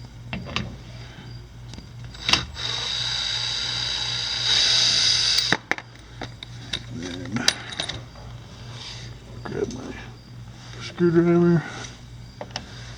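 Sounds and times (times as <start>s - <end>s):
drill motor whine: 1.0s - 5.6s.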